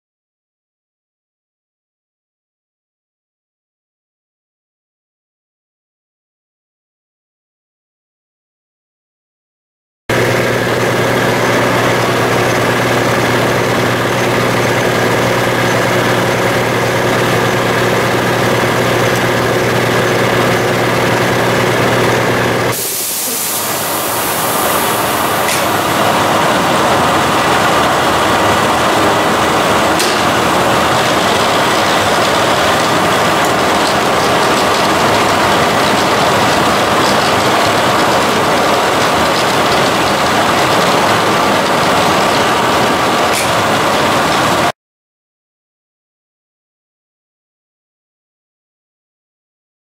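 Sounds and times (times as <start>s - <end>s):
lathe humming: 10.1s - 44.7s.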